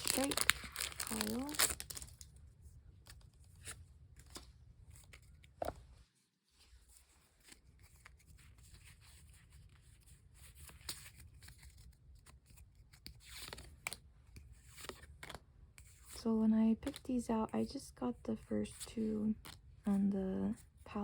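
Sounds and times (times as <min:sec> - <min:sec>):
cards and packaging rustling: 0:00.0 - 0:05.8, 0:07.0 - 0:21.0
low steady hum: 0:15.6 - 0:21.0.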